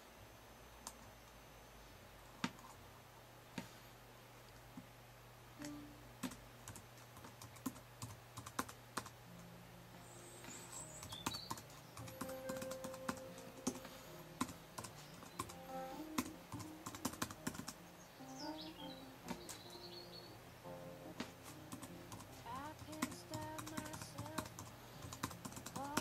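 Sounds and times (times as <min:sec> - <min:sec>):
computer keyboard keys clicking: 0:05.6 - 0:09.2, 0:11.0 - 0:17.8, 0:21.7 - 0:26.0.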